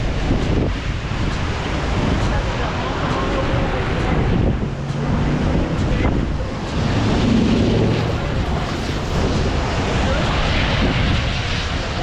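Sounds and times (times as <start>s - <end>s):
loud rushing wind: 0.0s - 12.0s.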